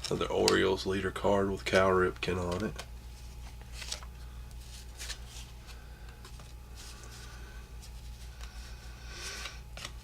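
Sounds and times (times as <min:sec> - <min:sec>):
low electrical hum: 0:00.0 - 0:10.0
cards being flipped through: 0:02.1 - 0:10.0.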